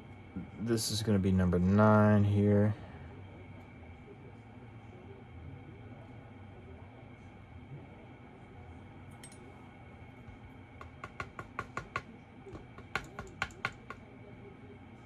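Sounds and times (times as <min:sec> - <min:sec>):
small metal taps and clicks: 0:10.3 - 0:14.0.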